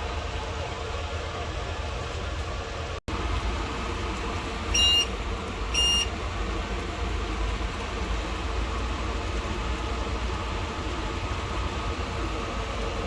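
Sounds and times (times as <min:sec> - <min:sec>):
steady low hum: 0:00.0 - 0:13.0
short high electronic beeps: 0:04.8 - 0:05.1, 0:05.8 - 0:06.1.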